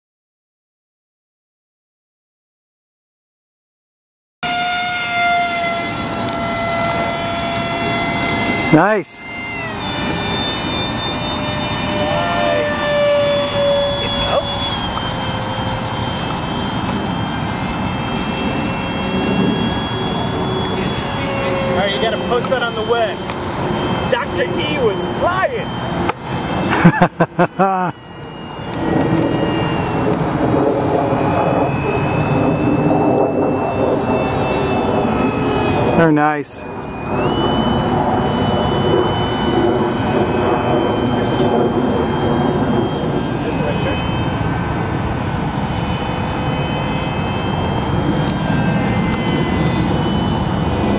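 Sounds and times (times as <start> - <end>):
model airplane motor whining: 4.4 - 50.9
wind noise: 4.7 - 50.9.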